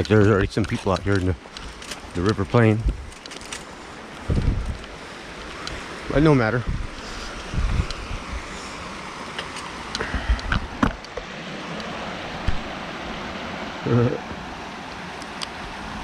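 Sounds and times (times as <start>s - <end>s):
creek water rushing: 0.0s - 16.0s
light clicks: 3.1s - 5.8s.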